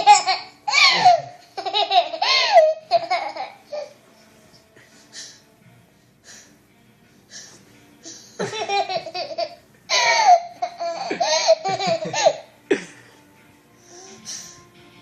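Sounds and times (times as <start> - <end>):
young child laughing: 0.0 - 3.6, 8.4 - 13.0.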